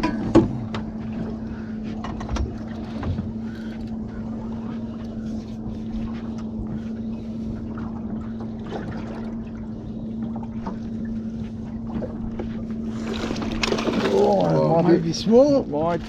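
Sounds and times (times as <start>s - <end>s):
low machine hum: 0.0s - 16.0s
water moving around hull: 0.0s - 16.0s.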